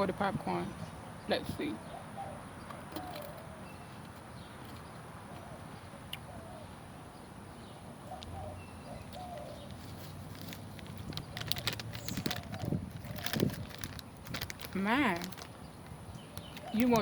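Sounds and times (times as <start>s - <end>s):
birds calling: 0.0s - 17.0s
outdoor background noise: 0.0s - 17.0s
crackling: 10.3s - 15.6s.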